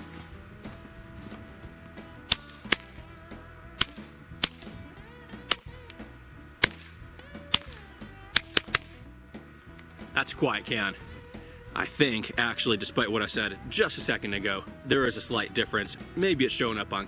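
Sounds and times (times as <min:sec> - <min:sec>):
quiet background music: 0:00.0 - 0:17.0
suppressed pistol shots: 0:02.3 - 0:09.1.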